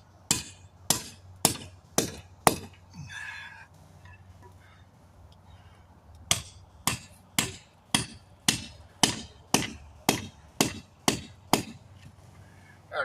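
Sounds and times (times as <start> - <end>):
hammer striking steel: 0.3 - 2.8, 6.3 - 11.8.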